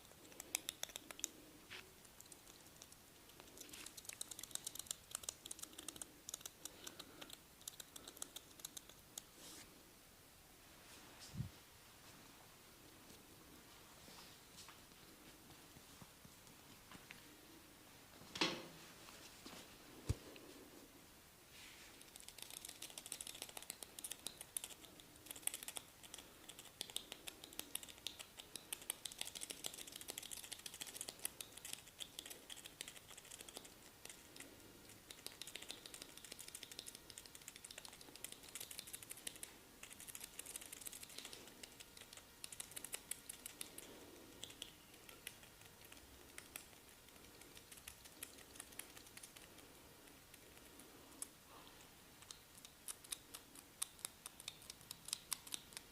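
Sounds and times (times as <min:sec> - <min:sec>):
fingers scratching through hair: 0:00.0 - 0:09.7, 0:21.8 - 0:51.3.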